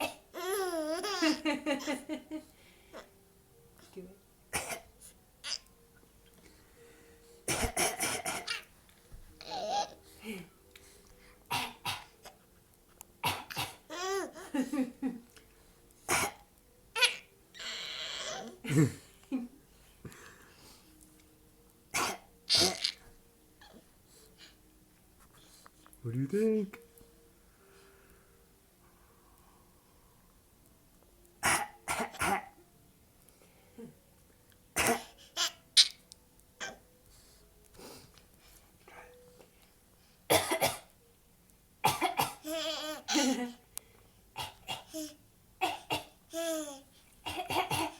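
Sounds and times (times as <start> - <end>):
person coughing: 7.5 - 8.6, 47.3 - 47.9.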